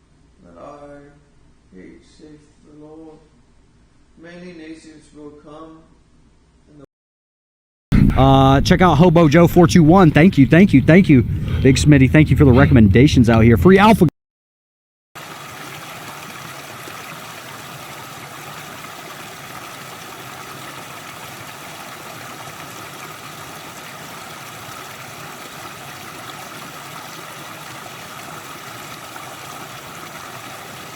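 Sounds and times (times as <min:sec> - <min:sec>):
steady broadband hiss: 0:00.0 - 0:06.8.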